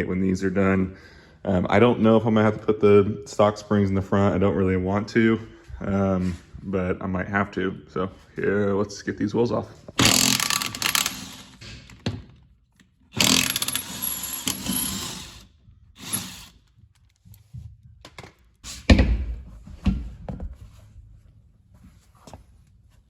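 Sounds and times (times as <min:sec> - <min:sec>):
impact wrench firing in bursts: 0:10.0 - 0:11.9, 0:13.2 - 0:16.6.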